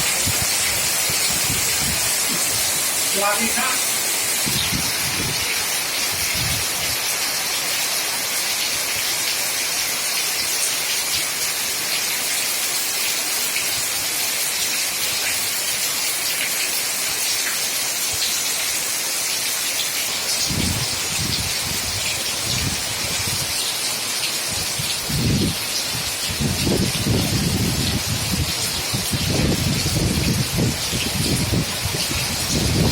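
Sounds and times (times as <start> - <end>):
wind gusts: 0.0 - 7.2, 20.4 - 32.9
heavy rain pouring: 0.0 - 32.9.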